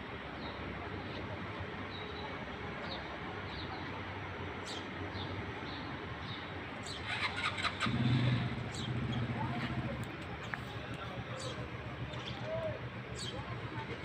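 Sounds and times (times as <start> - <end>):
steady outdoor background hum: 0.0 - 14.0
small birds chirping: 4.6 - 14.0.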